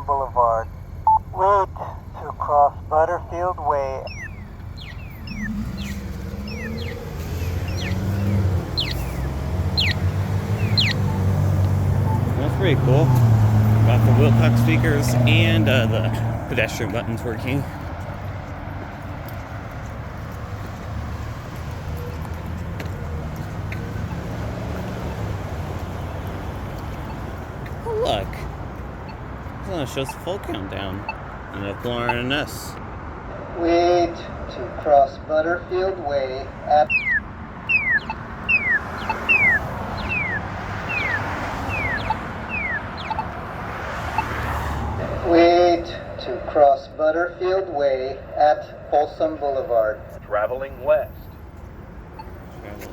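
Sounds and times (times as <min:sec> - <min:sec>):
cars passing: 0:00.0 - 0:52.9
street traffic hum: 0:00.0 - 0:52.9
electronic chirp falling in pitch: 0:04.0 - 0:13.2, 0:36.9 - 0:43.4.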